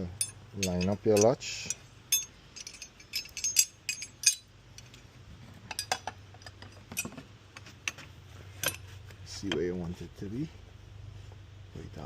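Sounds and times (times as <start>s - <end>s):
metal gate latch clinking: 0.2s - 4.9s, 5.7s - 7.2s.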